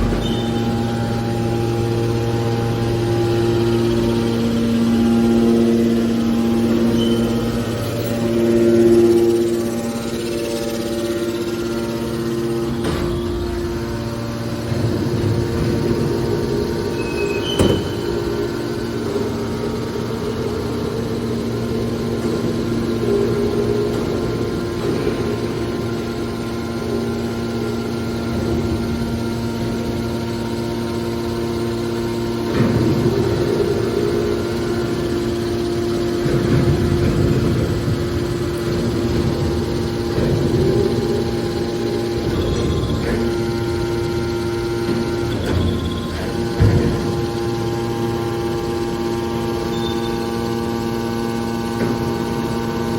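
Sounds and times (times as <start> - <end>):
baler machine hum: 0.0 - 52.9.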